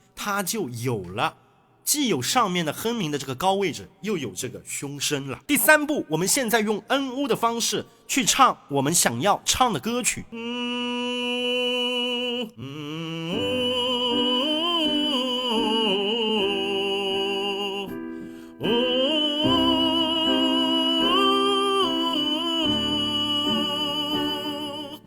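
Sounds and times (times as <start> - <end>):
person singing on oo vowel: 10.4 - 25.0.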